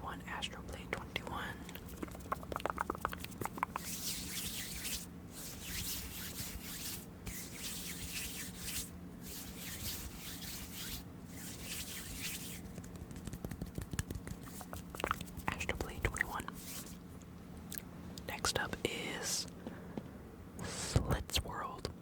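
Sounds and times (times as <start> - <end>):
hands rubbing together: 1.7 - 17.0.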